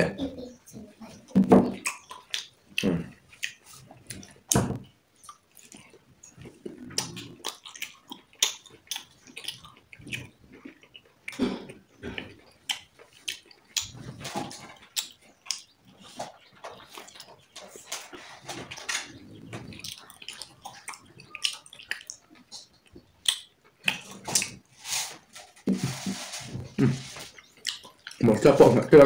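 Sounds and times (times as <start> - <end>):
person chewing: 1.7 - 4.6, 5.2 - 28.2
mouth smacks and clicks: 1.7 - 18.2, 18.8 - 24.7, 26.8 - 28.2.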